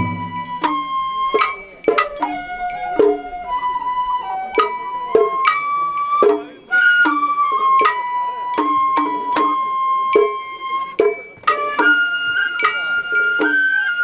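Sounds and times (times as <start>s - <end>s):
sharp metallic strikes: 0.0s - 2.3s
low drumming: 0.0s - 6.7s
bamboo flute melody: 0.0s - 14.0s.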